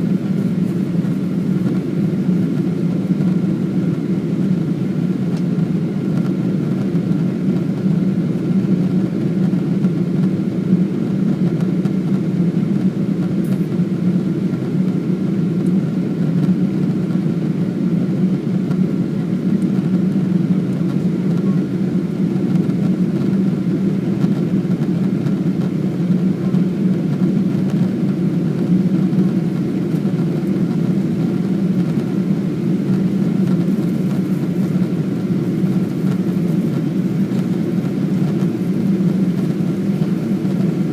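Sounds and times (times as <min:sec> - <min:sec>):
aircraft cabin engine hum: 0:00.0 - 0:40.9
faint steady whine: 0:00.0 - 0:40.9.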